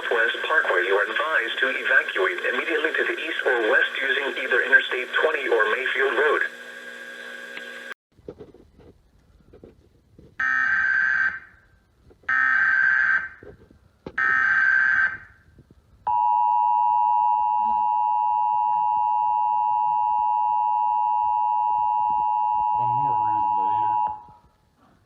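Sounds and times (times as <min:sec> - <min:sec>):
two-tone attention signal: 0:16.1 - 0:24.4.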